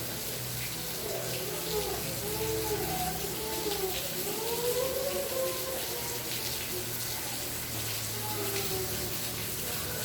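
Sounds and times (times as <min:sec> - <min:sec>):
steady rain: 0:00.0 - 0:10.0.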